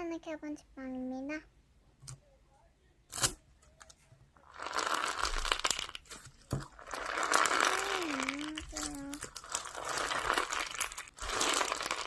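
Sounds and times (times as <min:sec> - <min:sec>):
crinkling and crackling: 0:03.6 - 0:12.0.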